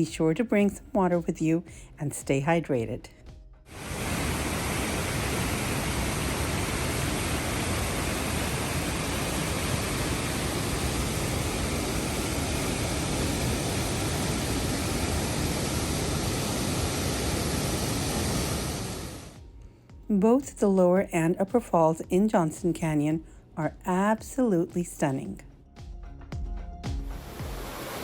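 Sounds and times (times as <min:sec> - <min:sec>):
waterfall pouring: 0:03.7 - 0:19.3.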